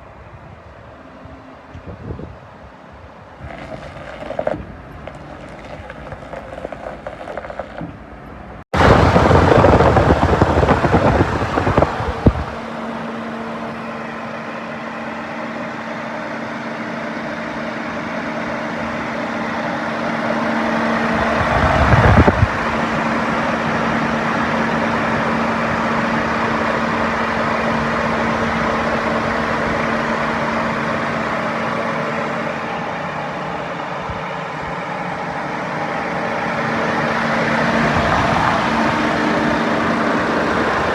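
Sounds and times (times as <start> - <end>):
diesel engine running: 0.0 - 40.9
burst of noise: 8.8 - 12.7.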